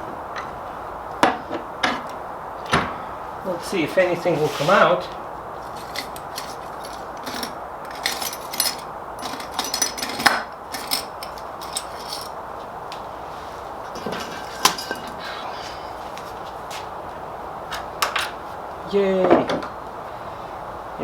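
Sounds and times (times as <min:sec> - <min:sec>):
steady background hiss: 0:00.0 - 0:21.0
metal hand tools clinking: 0:05.6 - 0:12.4, 0:13.9 - 0:15.2.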